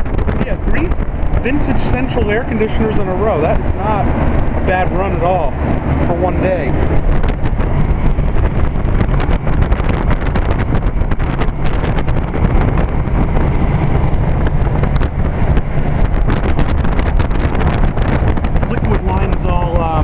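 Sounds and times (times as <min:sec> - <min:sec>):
air conditioner fan running: 0:00.0 - 0:20.0.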